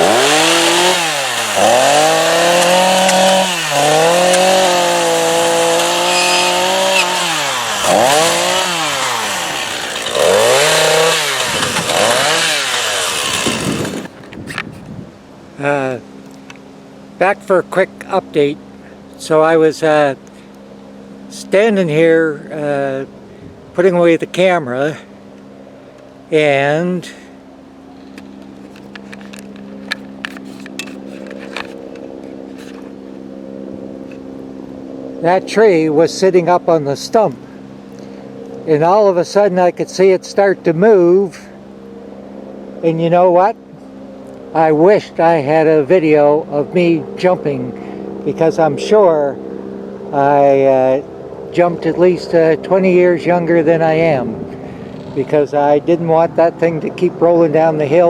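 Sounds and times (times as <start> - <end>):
chainsaw running at high revs: 0.0 - 14.2
engine idling: 0.0 - 14.2.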